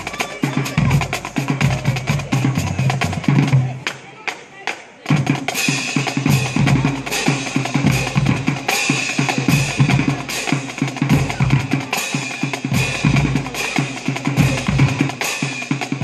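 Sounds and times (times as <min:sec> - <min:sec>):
rapid snare drum hits: 0:05.1 - 0:16.0.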